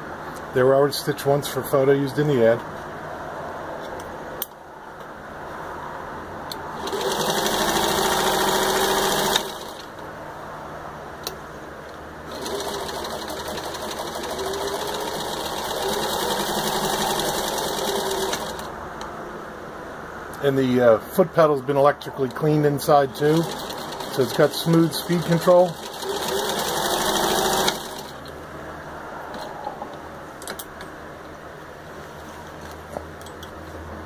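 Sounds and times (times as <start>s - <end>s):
sewing machine stitching: 6.8s - 9.9s, 12.3s - 18.7s, 22.8s - 28.3s.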